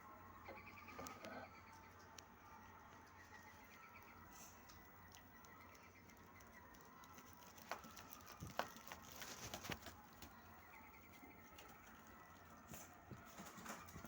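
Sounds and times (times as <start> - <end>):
soft eating clicks and smacks: 3.1 - 13.0.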